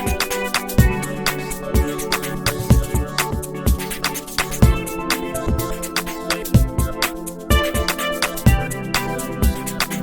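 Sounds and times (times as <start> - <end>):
kick drum beat: 0.1 - 1.2, 1.8 - 4.0, 4.6 - 5.9, 6.5 - 8.8, 9.4 - 9.8.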